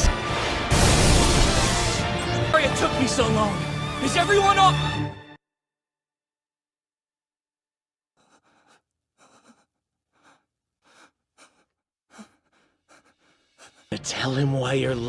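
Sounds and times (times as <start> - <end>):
person breathing raggedly: 8.2 - 13.9.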